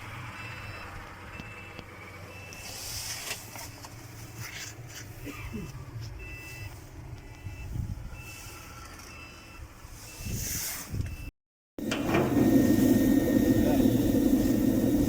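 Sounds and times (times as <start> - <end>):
electronic warning beeps: 0.4 - 2.8, 6.2 - 10.4
low engine rumble: 11.8 - 15.0.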